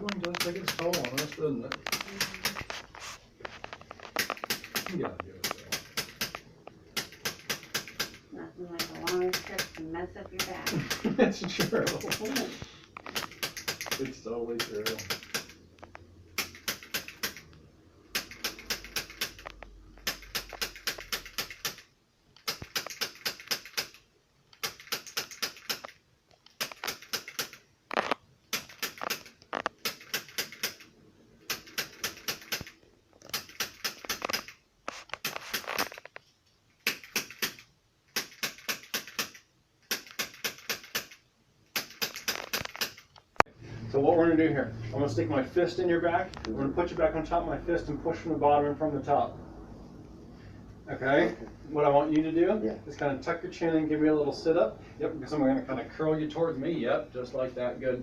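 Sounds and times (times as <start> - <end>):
adjusting instrument clicking: 0.0 - 36.2.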